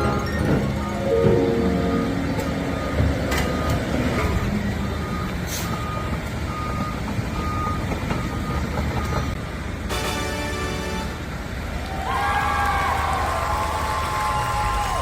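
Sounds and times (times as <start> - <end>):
reversing alarm beeping: 0.0 - 11.0
diesel engine rumble: 0.0 - 15.0.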